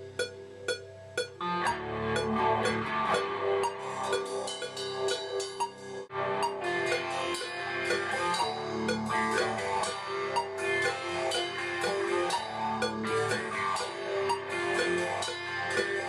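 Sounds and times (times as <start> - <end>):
drum kit: 0.0 - 16.0
electric guitar: 1.4 - 5.1, 6.1 - 16.0
rock band playing: 6.3 - 16.0.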